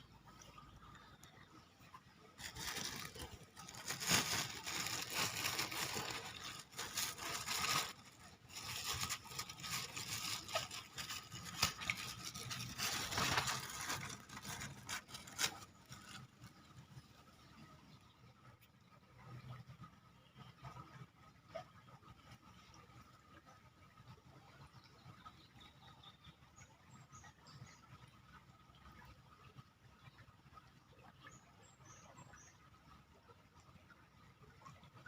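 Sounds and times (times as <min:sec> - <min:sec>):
rustling and scraping handling noise: 0:02.3 - 0:16.9.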